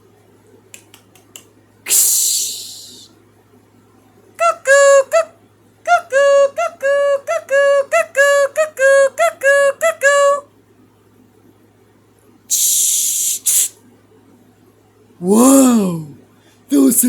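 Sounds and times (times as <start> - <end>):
high hiss: 1.9 - 3.1, 12.5 - 13.8.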